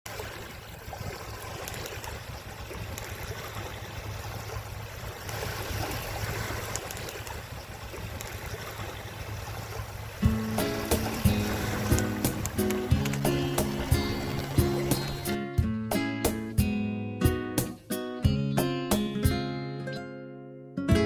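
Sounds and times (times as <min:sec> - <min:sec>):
waves lapping at shore: 0:00.0 - 0:16.7.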